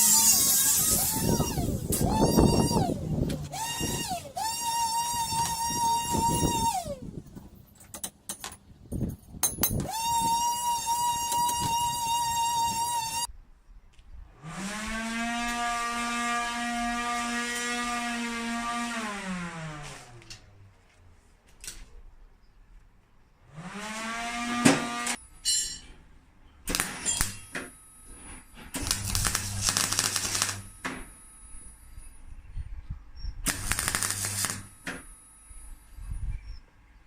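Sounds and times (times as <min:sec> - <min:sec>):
power tool motor whining: 0:00.0 - 0:07.1.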